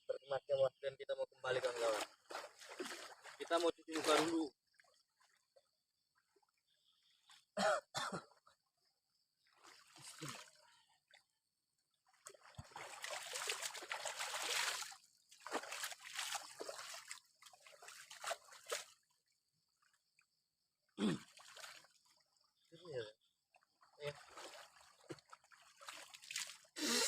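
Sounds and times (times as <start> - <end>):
hands splashing water: 12.1 - 19.0, 24.1 - 26.8.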